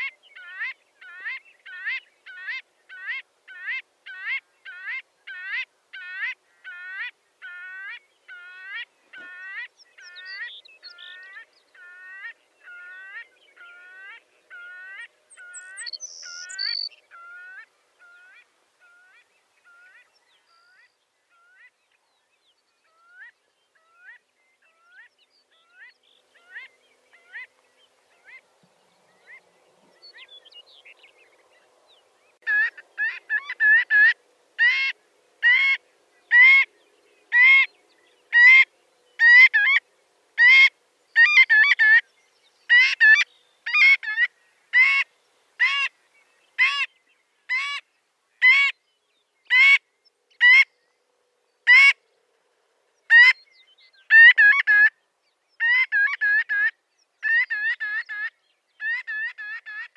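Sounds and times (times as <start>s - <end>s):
bird calling: 0.0s - 20.0s, 32.4s - 39.8s, 40.4s - 42.1s.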